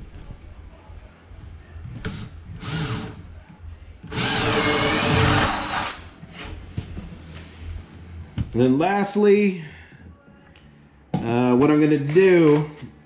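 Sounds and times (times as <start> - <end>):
power drill boring through wood panel: 2.1 - 3.2, 4.1 - 6.0.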